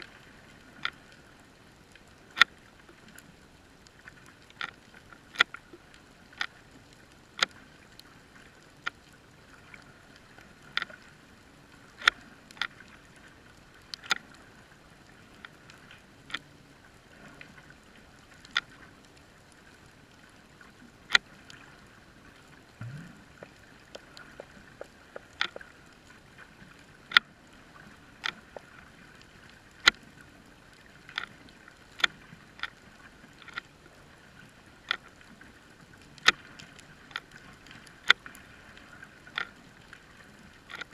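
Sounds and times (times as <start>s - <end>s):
sharp underwater clicks and snaps: 0.0s - 1.2s, 1.9s - 11.1s, 11.9s - 13.0s, 13.8s - 14.4s, 15.3s - 16.6s, 18.2s - 19.2s, 21.1s - 21.8s, 22.7s - 27.3s, 28.2s - 30.1s, 30.7s - 33.7s, 36.0s - 39.6s, 40.6s - 40.9s
faint steady hiss: 0.0s - 40.9s
low rising grunt: 22.8s - 23.3s.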